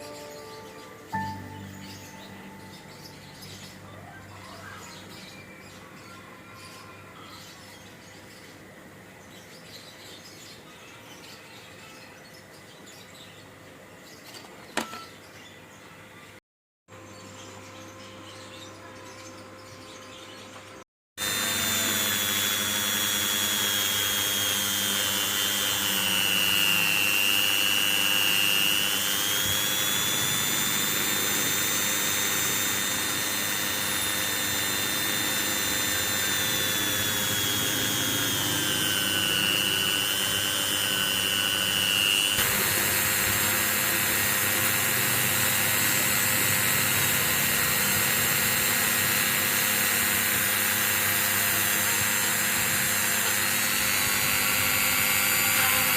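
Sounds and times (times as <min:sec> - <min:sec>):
small electric motor whining: 0:21.2 - 0:55.9.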